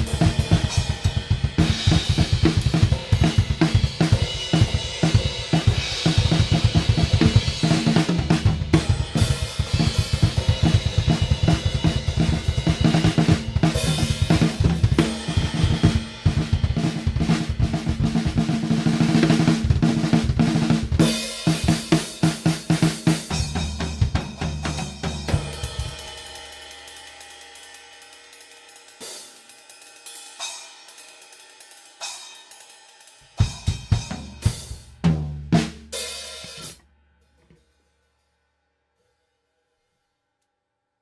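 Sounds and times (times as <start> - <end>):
hi-hat and crash cymbals: 0.0 - 17.3, 21.0 - 35.0, 35.9 - 36.8.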